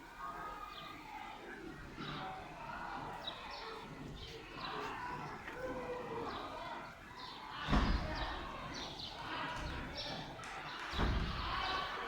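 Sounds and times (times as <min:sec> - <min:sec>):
murmur of voices: 0:00.0 - 0:12.0.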